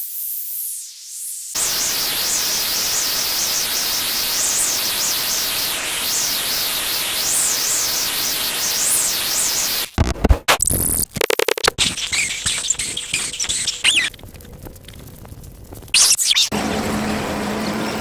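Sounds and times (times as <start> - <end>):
high hiss: 0.0 - 9.9, 11.8 - 14.1
loud static noise with sweep: 0.0 - 14.9, 15.7 - 16.6.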